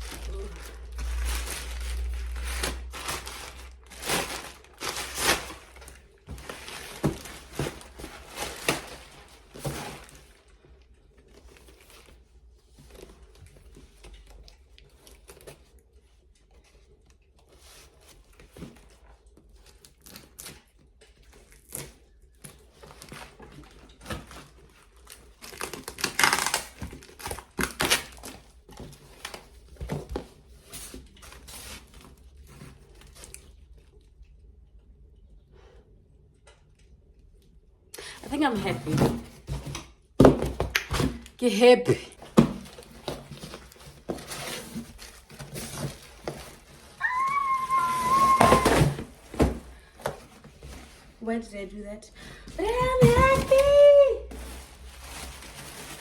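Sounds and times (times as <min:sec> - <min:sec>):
packaging crinkling and tearing: 0:00.0 - 0:12.2, 0:19.5 - 0:30.0, 0:42.3 - 0:50.4, 0:53.1 - 0:56.0.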